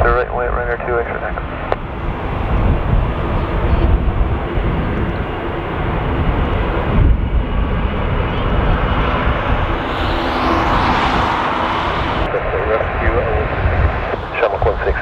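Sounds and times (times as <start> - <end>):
jet engines running: 0.9 - 15.0
wind on microphone: 1.5 - 15.0.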